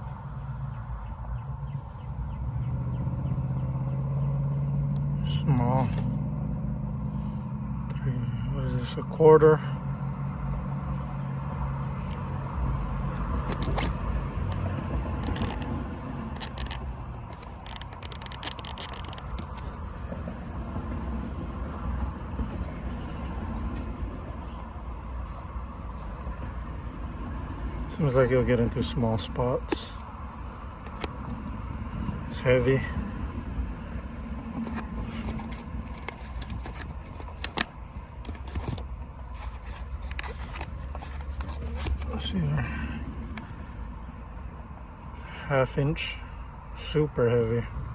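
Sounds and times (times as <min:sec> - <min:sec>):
ratchet clicks: 0:15.2 - 0:15.7, 0:16.4 - 0:19.6, 0:30.8 - 0:31.4
packaging being handled: 0:34.5 - 0:42.1.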